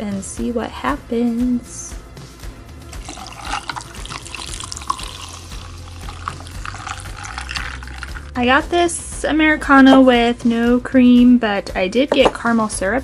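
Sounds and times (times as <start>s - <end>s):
coffee pouring and splashing: 2.9s - 8.4s
ice clicking and crackling: 3.0s - 8.2s.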